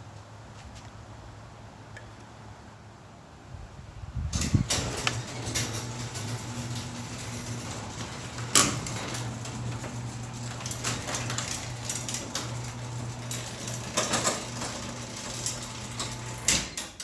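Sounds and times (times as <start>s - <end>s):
clicks and rattles: 4.3s - 17.0s
garage door opener motor hum: 4.3s - 17.0s.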